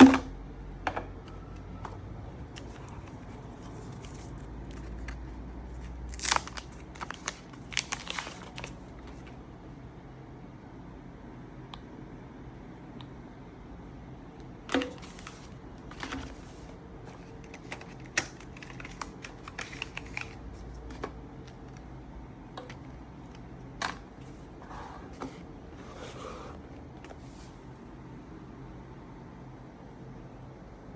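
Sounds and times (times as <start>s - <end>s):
phone and packaging being handled: 1.2s - 9.4s, 14.4s - 27.7s.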